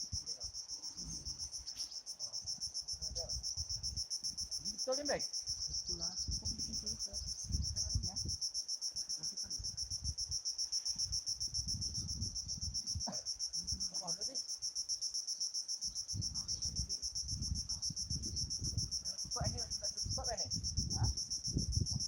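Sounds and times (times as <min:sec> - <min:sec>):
crickets chirping: 0:00.0 - 0:22.0
low rumbles on microphone: 0:16.2 - 0:22.0.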